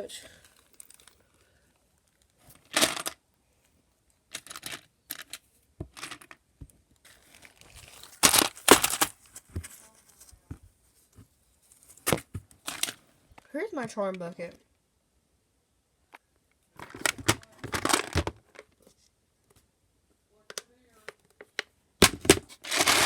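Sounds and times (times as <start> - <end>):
plastic packets crinkling: 7.1 - 9.4, 22.0 - 23.0.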